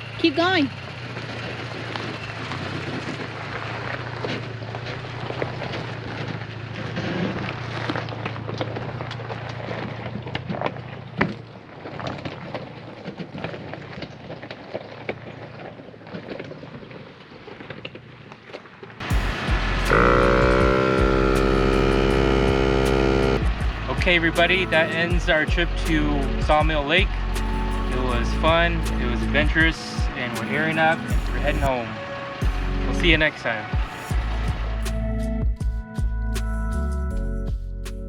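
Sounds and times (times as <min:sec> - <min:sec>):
low engine hum: 0:00.0 - 0:38.0
tyres crunching over stones: 0:01.0 - 0:19.0
loud multi-tone hum: 0:19.1 - 0:24.9.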